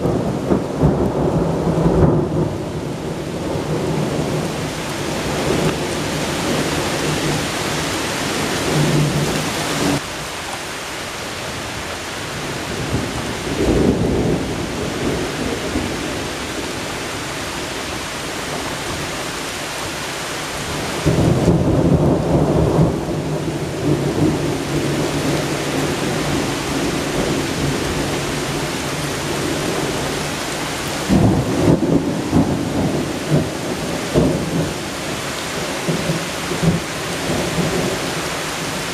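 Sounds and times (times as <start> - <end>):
rolling thunder: 0.0 - 10.0, 12.7 - 17.0, 20.7 - 30.3, 31.0 - 35.0
heavy rain: 0.0 - 38.9.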